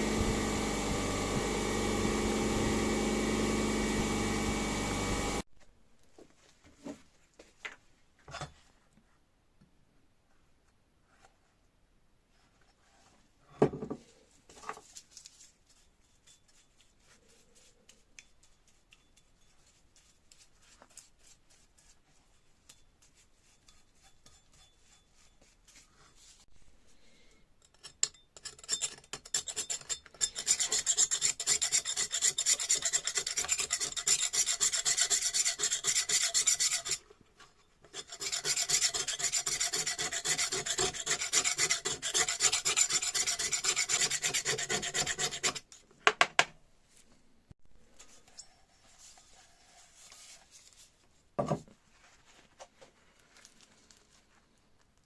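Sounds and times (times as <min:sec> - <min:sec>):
knock: 0:51.4 - 0:51.7.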